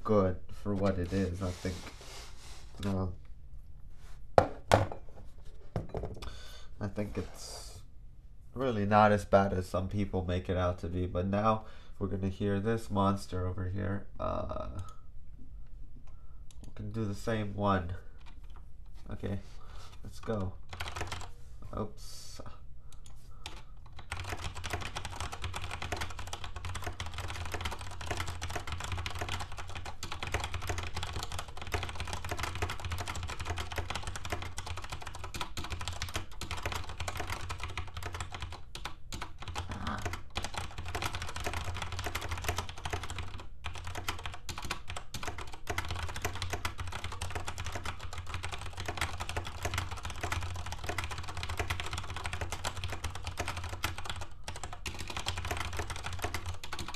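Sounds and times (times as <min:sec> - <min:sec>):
mechanical keyboard typing: 0:20.2 - 0:21.3, 0:23.4 - 0:56.9.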